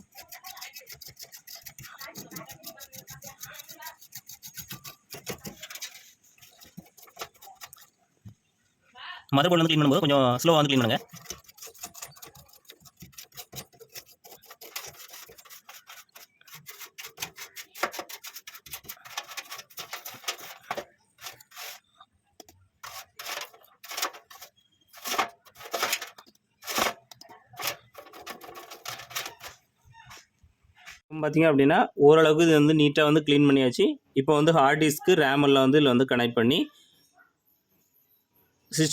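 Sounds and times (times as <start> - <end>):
small brush scrubbing circuit board: 0.0 - 8.0, 9.4 - 29.6.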